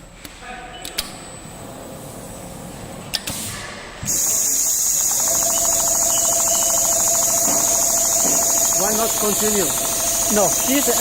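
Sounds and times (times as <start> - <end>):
machine hum: 4.7 - 11.0
sewing machine stitching ticks: 5.0 - 11.0.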